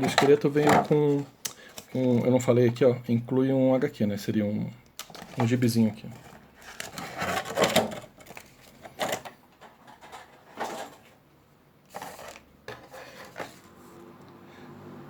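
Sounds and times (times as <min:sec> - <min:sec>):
packaging rustles and knocks: 0:00.0 - 0:02.8, 0:05.1 - 0:11.2, 0:11.9 - 0:13.7.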